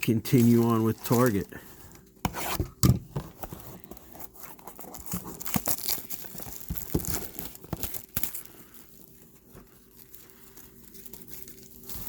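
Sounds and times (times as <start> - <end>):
card packaging tearing and crinkling: 0.0 - 12.0.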